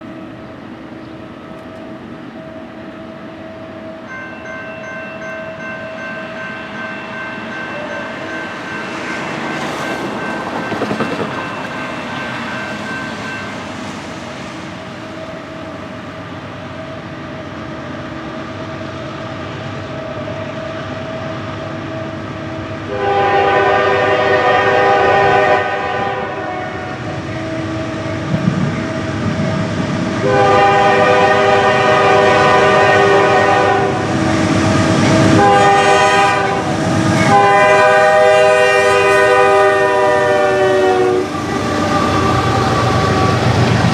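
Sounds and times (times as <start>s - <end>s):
freight train approaching: 0.0s - 43.9s
locomotive air horn: 22.9s - 27.0s, 30.2s - 34.0s, 35.0s - 43.8s.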